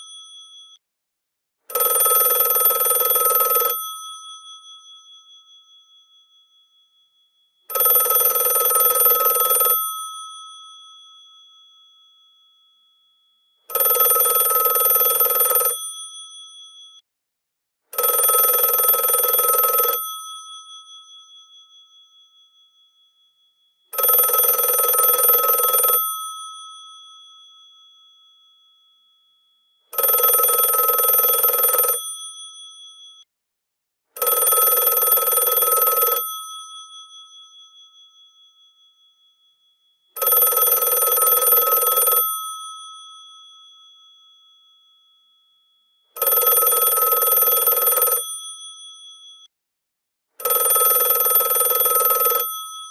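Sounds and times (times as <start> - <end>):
telephone bell ringing: 1.7 - 4.9, 7.7 - 11.1, 13.7 - 16.6, 17.9 - 21.0, 23.9 - 27.3, 29.9 - 32.6, 34.2 - 37.3, 40.2 - 43.3, 46.2 - 49.2, 50.4 - 52.9.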